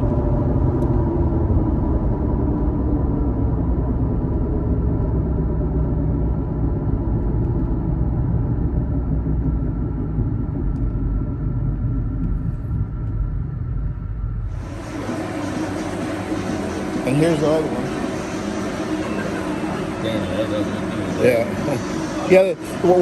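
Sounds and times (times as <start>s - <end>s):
droning wheel bearing hum: 0.0s - 23.0s.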